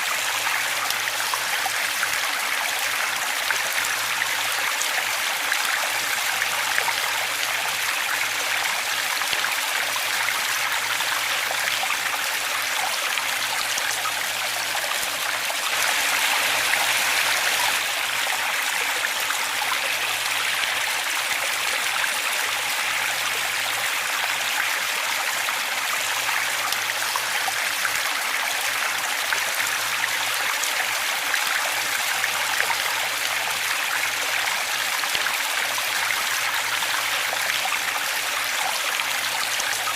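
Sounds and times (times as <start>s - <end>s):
waterfall rushing: 14.3s - 22.2s.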